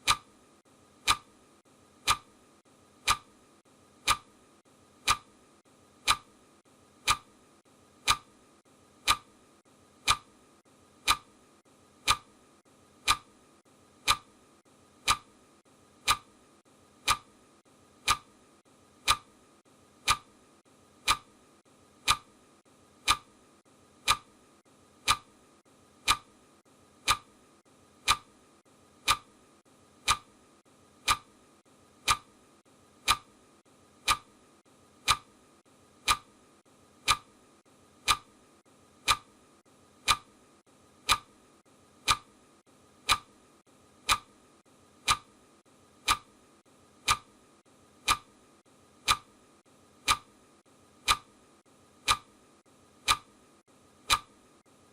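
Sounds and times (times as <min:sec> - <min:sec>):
clock ticking: 0:00.0 - 0:00.3, 0:01.0 - 0:01.3, 0:02.0 - 0:02.4, 0:03.0 - 0:03.3, 0:04.0 - 0:04.3, 0:05.0 - 0:05.4, 0:06.0 - 0:06.4, 0:07.0 - 0:07.4, 0:08.0 - 0:08.4, 0:09.0 - 0:09.4, 0:10.0 - 0:10.4, 0:11.0 - 0:11.4, 0:12.0 - 0:12.4, 0:13.0 - 0:13.4, 0:14.0 - 0:14.4, 0:15.0 - 0:15.4, 0:16.0 - 0:16.4, 0:17.0 - 0:17.4, 0:18.0 - 0:18.4, 0:19.0 - 0:19.4, 0:20.0 - 0:20.4, 0:21.0 - 0:21.4, 0:22.0 - 0:22.4, 0:23.0 - 0:23.4, 0:24.0 - 0:24.4, 0:25.0 - 0:25.4, 0:26.0 - 0:26.4, 0:27.0 - 0:27.4, 0:28.0 - 0:28.4, 0:29.0 - 0:29.4, 0:30.0 - 0:30.3, 0:31.0 - 0:31.3, 0:32.0 - 0:32.4, 0:33.0 - 0:33.4, 0:34.0 - 0:34.3, 0:35.0 - 0:35.4, 0:36.0 - 0:36.4, 0:37.0 - 0:37.4, 0:38.0 - 0:38.3, 0:39.0 - 0:39.3, 0:40.0 - 0:40.4, 0:41.0 - 0:41.3, 0:42.0 - 0:42.3, 0:43.0 - 0:43.3, 0:44.0 - 0:44.3, 0:45.0 - 0:45.3, 0:46.0 - 0:46.3, 0:47.0 - 0:47.4, 0:48.0 - 0:48.3, 0:49.0 - 0:49.4, 0:50.0 - 0:50.4, 0:51.0 - 0:51.3, 0:52.0 - 0:52.4, 0:53.0 - 0:53.3, 0:54.0 - 0:54.3.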